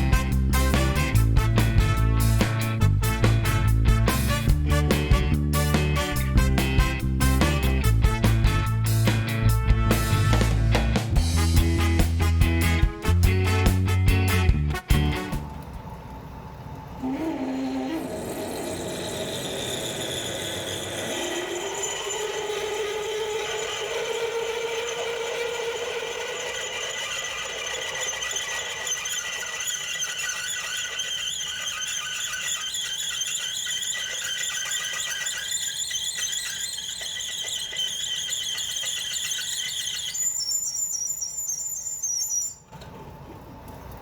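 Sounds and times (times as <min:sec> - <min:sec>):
lathe tool squealing on steel: 0:17.0 - 0:42.7.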